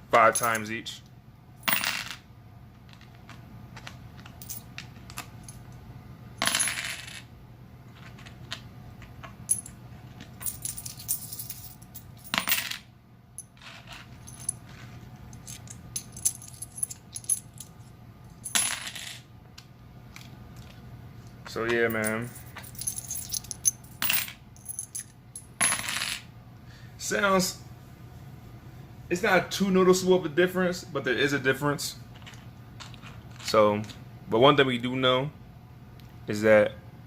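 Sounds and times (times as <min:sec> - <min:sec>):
coins clinking: 0:00.3 - 0:00.7, 0:01.6 - 0:02.2, 0:04.2 - 0:04.7, 0:06.4 - 0:07.3, 0:09.5 - 0:09.8, 0:10.4 - 0:12.8, 0:13.4 - 0:19.2, 0:21.6 - 0:26.2.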